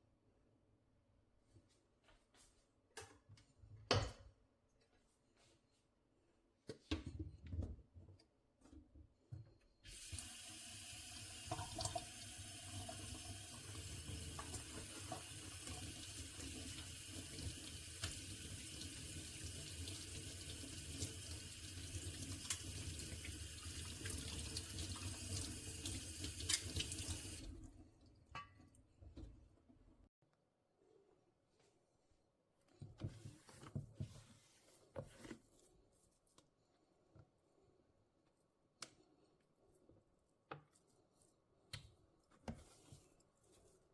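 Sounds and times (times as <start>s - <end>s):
water running into a sink: 9.9s - 27.8s.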